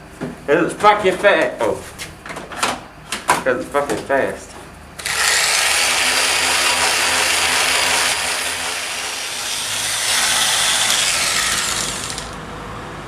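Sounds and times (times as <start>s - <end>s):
power tool grinding plastic: 5.0s - 12.4s.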